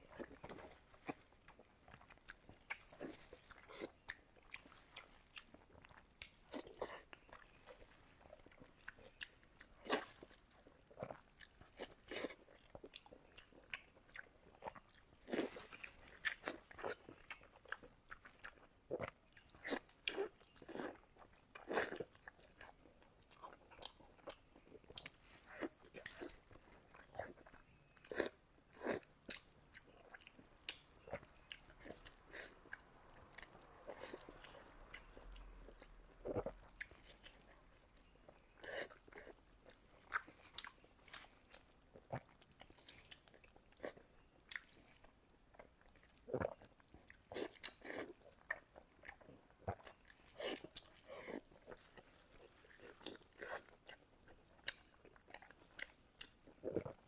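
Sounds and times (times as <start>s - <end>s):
wet chewing and lip smacks: 0.0s - 57.0s.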